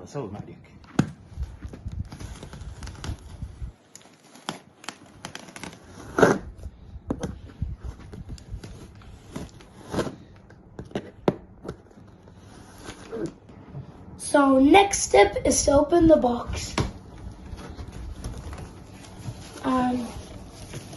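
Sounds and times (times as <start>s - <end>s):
cardboard tearing: 4.1s - 6.6s.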